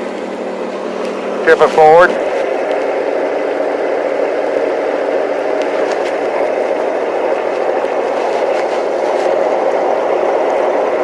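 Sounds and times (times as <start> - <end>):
small tractor engine running: 0.0 - 11.0.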